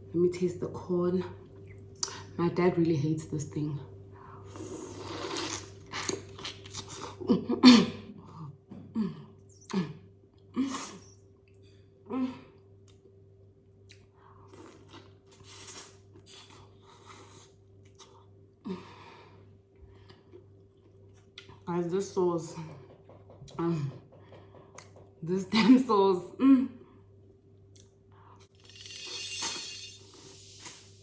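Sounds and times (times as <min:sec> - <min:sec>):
low electrical hum: 0:00.0 - 0:31.0
person chewing and crunching: 0:04.5 - 0:07.2.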